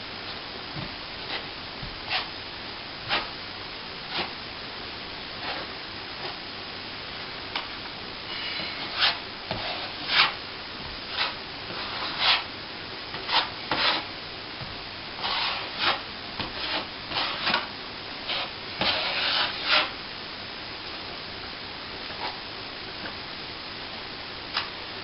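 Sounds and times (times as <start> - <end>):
trowel scraping plaster: 8.4 - 10.4, 11.1 - 12.5, 13.2 - 14.1, 15.2 - 19.9.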